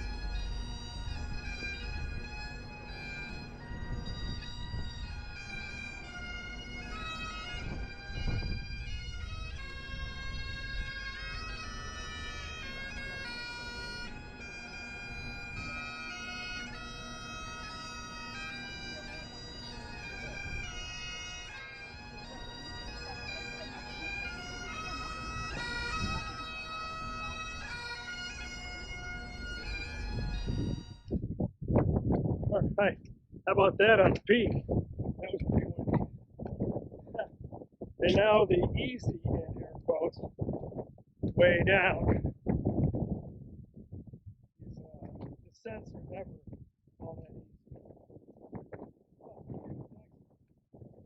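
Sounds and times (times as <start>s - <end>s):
wind rumble on microphone: 0.0s - 16.6s, 17.6s - 21.9s, 24.9s - 51.0s
bagpipe music: 0.0s - 31.2s.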